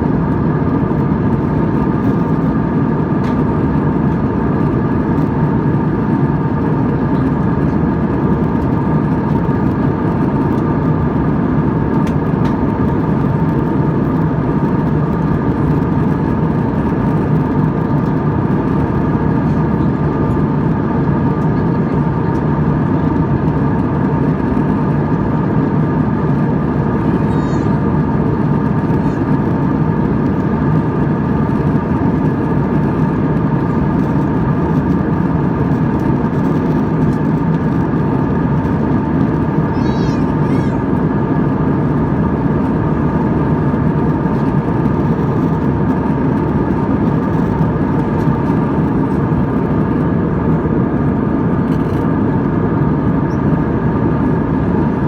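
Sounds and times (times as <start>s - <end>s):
jet engine cabin rush: 0.0s - 55.0s
steady whining tones: 23.8s - 49.8s.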